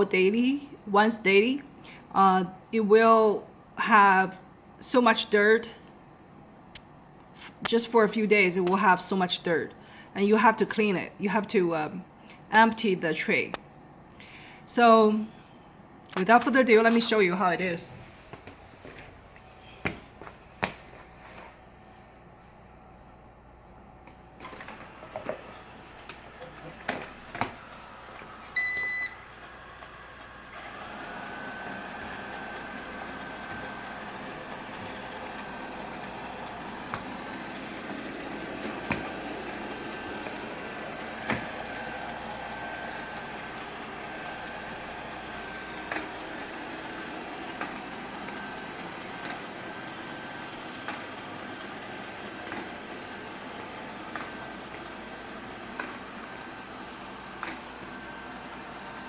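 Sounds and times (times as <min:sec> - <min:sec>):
vacuum motor high whine: 0:24.4 - 0:59.0
robot vacuum beep: 0:28.5 - 0:29.3.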